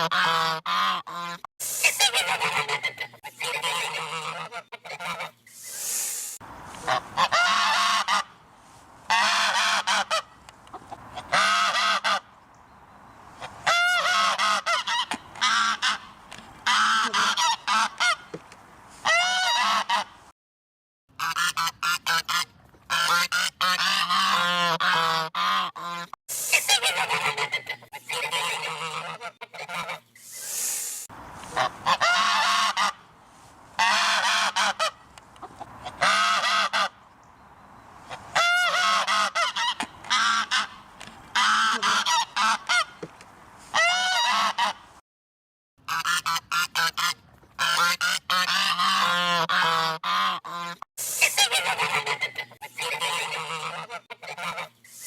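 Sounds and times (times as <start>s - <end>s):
geese honking: 0.0s - 5.4s, 6.7s - 8.4s, 9.1s - 12.3s, 13.4s - 18.3s, 19.0s - 20.2s, 21.2s - 30.1s, 31.4s - 33.1s, 33.8s - 37.0s, 38.1s - 43.0s, 43.7s - 44.8s, 45.9s - 55.0s.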